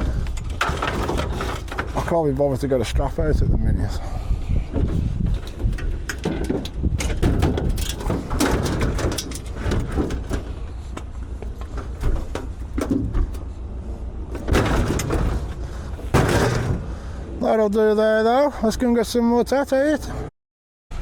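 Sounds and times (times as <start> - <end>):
scrap knocking and clattering: 0.0 - 2.2, 4.6 - 13.6, 14.2 - 17.2
low rumble: 2.7 - 17.7.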